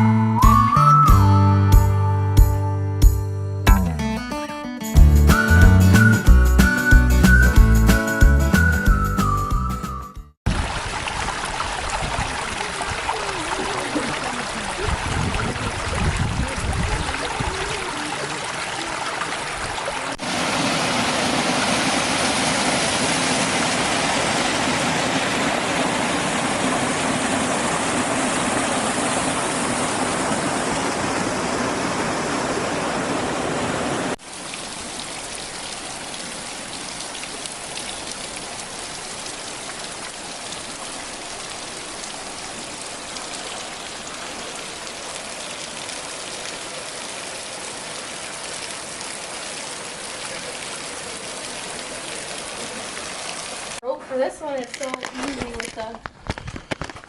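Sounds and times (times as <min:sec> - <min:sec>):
wind gusts on microphone: 0:10.5 - 0:18.1
rushing water hiss: 0:10.5 - 0:53.8.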